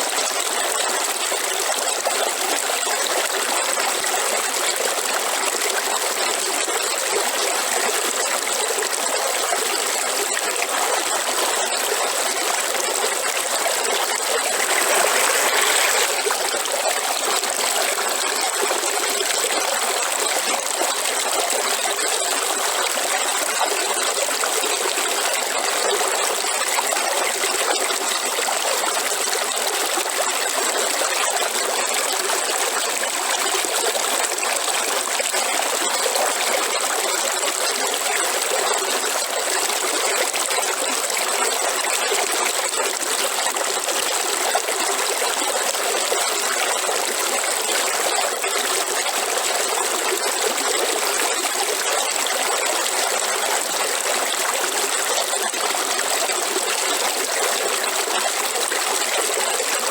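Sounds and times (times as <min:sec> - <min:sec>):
river water running: 0:08.8 - 0:28.1.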